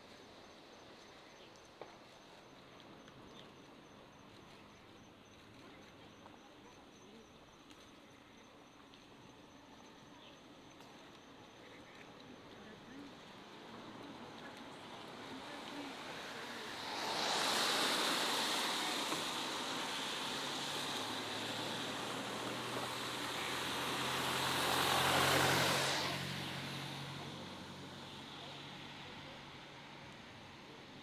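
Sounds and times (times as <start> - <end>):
low engine hum: 11.7 - 31.0
motor vehicle passing: 13.0 - 30.0.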